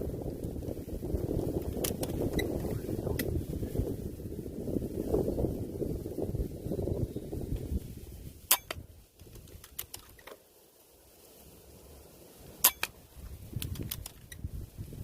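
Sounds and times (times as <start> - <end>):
wind buffeting microphone: 0.0 - 10.0, 13.0 - 15.0.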